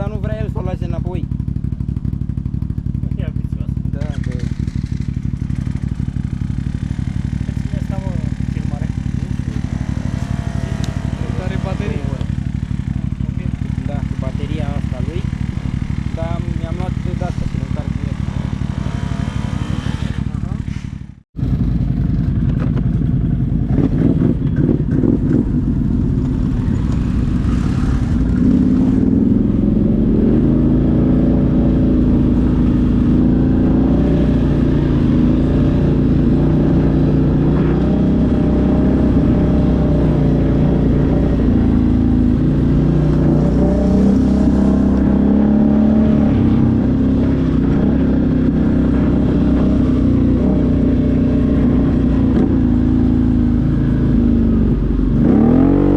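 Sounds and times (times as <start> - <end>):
atv engine revving: 0.0 - 55.9.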